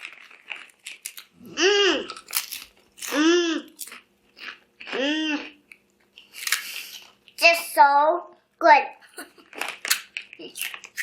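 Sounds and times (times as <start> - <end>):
potato chips being chewed: 0.0 - 7.4, 9.2 - 11.0
person humming mmm: 1.4 - 2.2, 3.1 - 3.8, 4.9 - 5.6.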